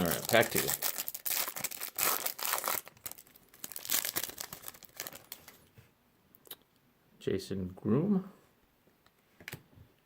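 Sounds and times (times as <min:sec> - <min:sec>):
foil wrapper crinkling: 0:00.0 - 0:05.7.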